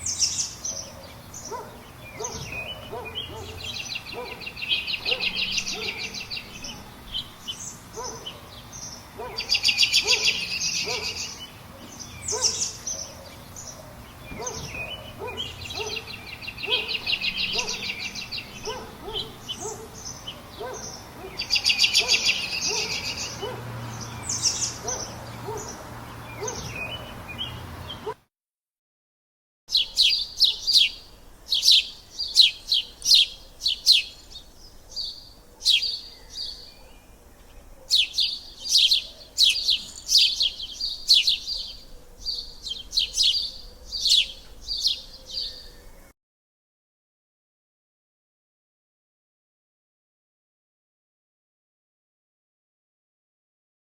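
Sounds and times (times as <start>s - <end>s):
birds calling and singing: 0.0s - 28.2s, 29.7s - 46.1s
fast high bird trills: 29.7s - 36.7s, 37.9s - 45.7s.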